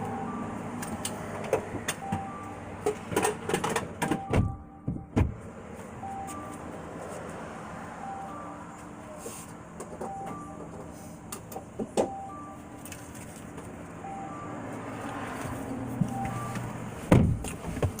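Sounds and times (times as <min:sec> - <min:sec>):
car two-note warning chime: 0:04.1 - 0:05.2, 0:06.0 - 0:06.8, 0:08.0 - 0:08.8, 0:10.1 - 0:10.7, 0:12.1 - 0:12.7.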